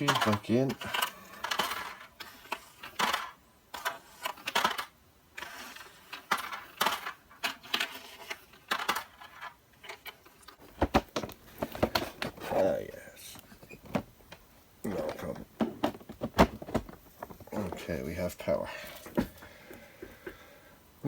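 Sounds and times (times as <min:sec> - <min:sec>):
plastic and metal parts clicking: 0:00.0 - 0:12.4.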